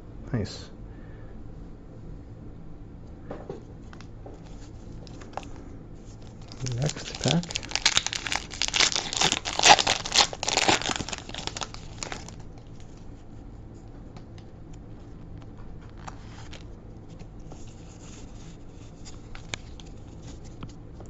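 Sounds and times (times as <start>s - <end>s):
faint clicks and rustles: 3.8s - 13.2s
foil pack tearing and crinkling: 5.0s - 5.5s, 6.2s - 13.0s.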